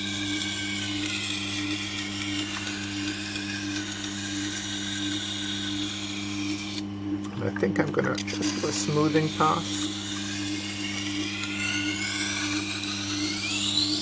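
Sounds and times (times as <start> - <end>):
grinder motor humming: 0.0 - 14.0
knife scraping on grinding stone: 8.2 - 14.0.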